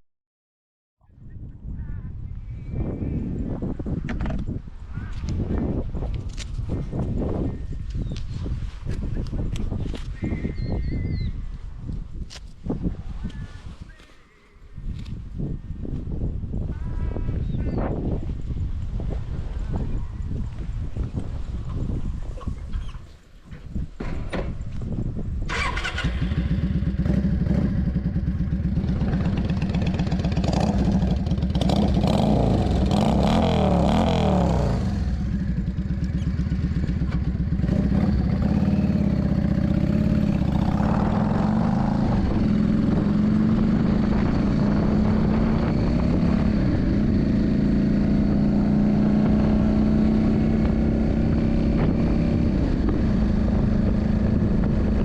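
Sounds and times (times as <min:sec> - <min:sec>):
motorcycle engine running: 0:25.5 - 0:55.0.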